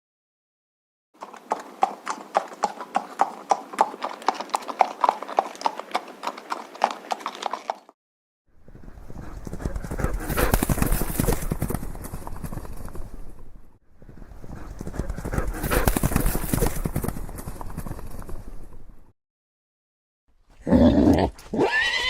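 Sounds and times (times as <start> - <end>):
hooves clip-clopping on hard surface: 1.2 - 7.9, 8.7 - 19.0
horse galloping: 1.2 - 7.9, 8.6 - 19.1.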